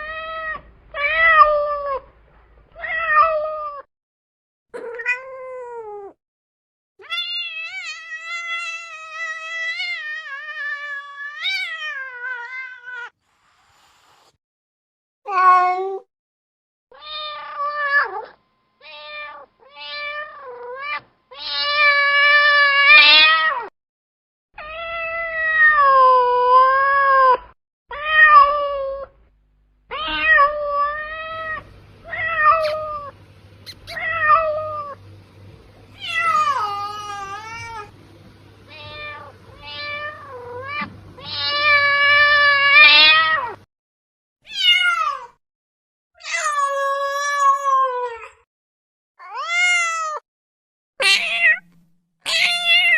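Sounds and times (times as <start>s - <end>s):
cat meowing: 7.0s - 13.2s, 17.0s - 23.7s, 29.9s - 35.0s, 35.9s - 37.9s, 38.7s - 43.6s, 44.5s - 45.3s, 49.2s - 50.2s, 51.0s - 52.9s.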